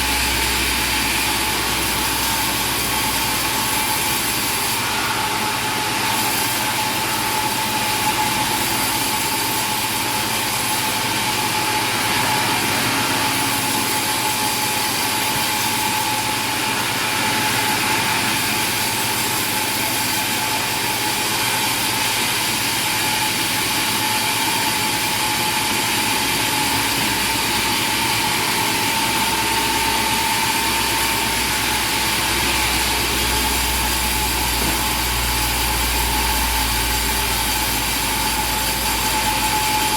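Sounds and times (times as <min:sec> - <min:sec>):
machinery whining: 0:26.0 - 0:39.9.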